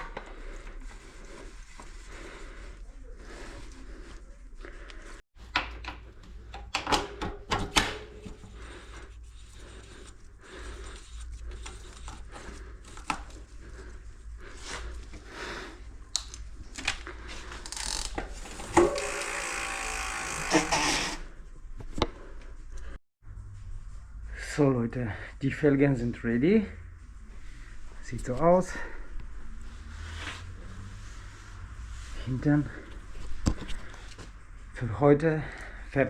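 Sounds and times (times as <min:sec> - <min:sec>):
bike wheel ratcheting buzz: 0:17.6 - 0:21.3.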